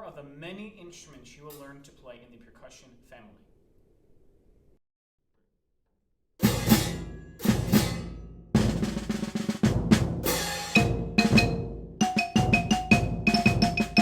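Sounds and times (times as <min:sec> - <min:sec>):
cymbal crashes: 0:06.4 - 0:08.2, 0:10.2 - 0:11.6
drums: 0:06.4 - 0:14.0.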